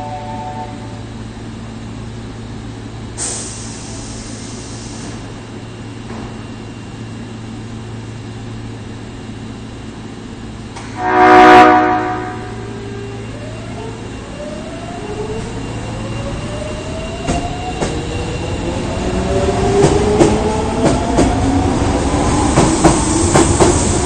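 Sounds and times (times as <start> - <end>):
train air horn: 0.0 - 1.0, 10.9 - 12.7
stopped train humming: 0.0 - 24.0
air hissing: 3.2 - 5.3.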